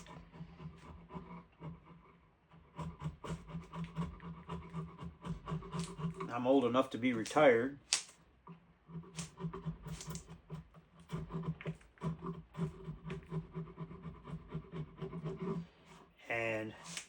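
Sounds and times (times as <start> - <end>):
scraping wooden stick by hand: 0.0 - 0.6, 2.8 - 8.1, 9.0 - 13.7, 16.8 - 17.0.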